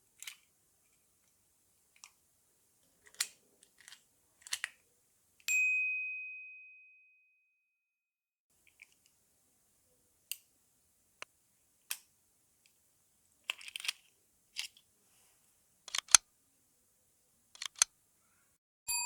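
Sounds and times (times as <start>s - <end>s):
padlock mechanism clicking: 3.0s - 4.8s, 15.9s - 16.2s, 17.6s - 17.9s.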